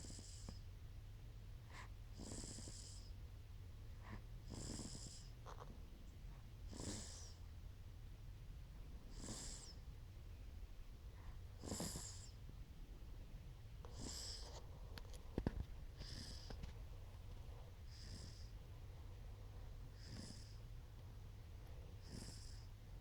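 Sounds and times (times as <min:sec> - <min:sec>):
baby snoring softly: 0:00.0 - 0:00.7, 0:01.6 - 0:03.2, 0:04.0 - 0:05.8, 0:06.6 - 0:07.5, 0:09.0 - 0:09.9, 0:11.1 - 0:12.4, 0:13.8 - 0:18.7, 0:19.8 - 0:20.7, 0:21.6 - 0:22.8.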